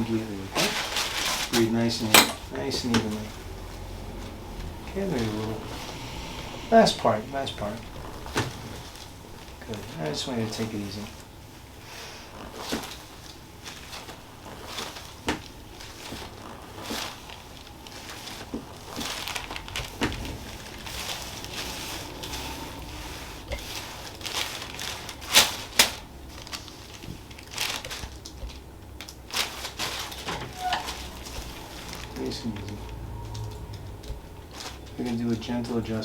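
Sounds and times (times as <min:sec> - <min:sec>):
small clicks and rustling: 0:12.5 - 0:35.8.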